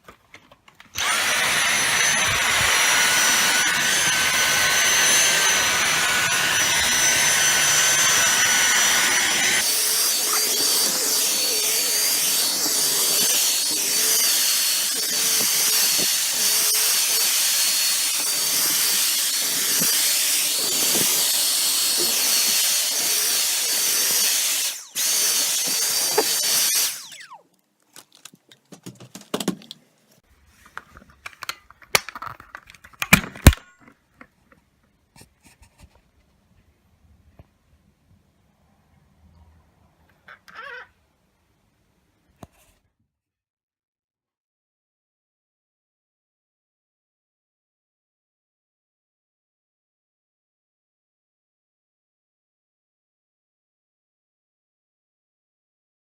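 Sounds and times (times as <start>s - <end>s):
vacuum cleaner whining: 1.0s - 27.4s.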